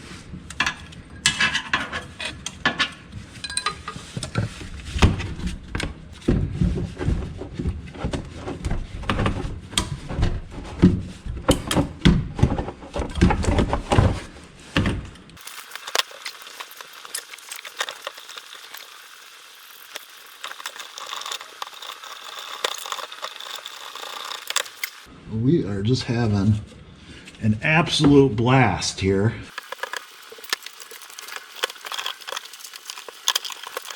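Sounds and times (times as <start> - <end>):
hand tools clanking and rattling: 0.6 - 4.5.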